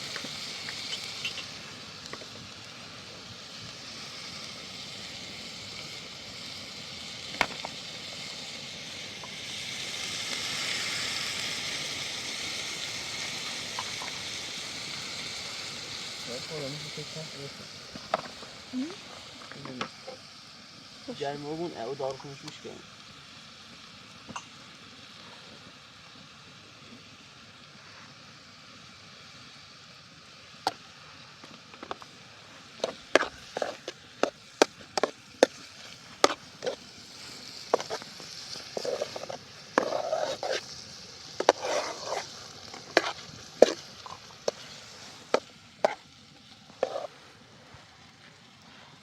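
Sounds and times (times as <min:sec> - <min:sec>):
food sizzling in a frying pan: 0:00.0 - 0:49.0
utensil scraping a pan: 0:32.8 - 0:46.1, 0:46.7 - 0:47.2.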